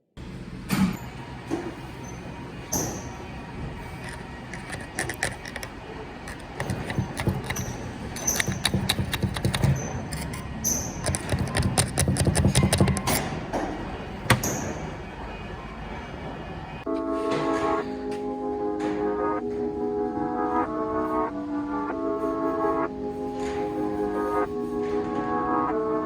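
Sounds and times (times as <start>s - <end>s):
low rumbling handling noise: 1.7s - 15.1s
metal parts clinking and clanking: 4.0s - 13.3s.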